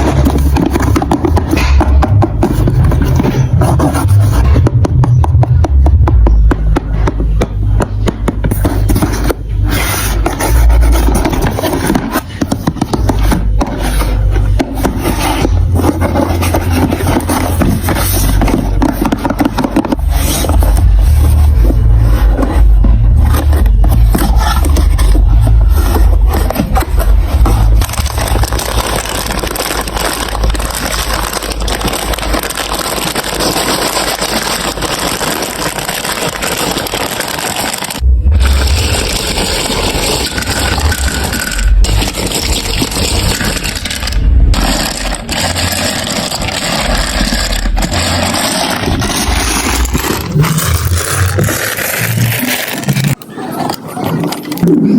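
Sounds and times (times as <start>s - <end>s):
marbles rolling on plastic track: 27.8s - 53.2s.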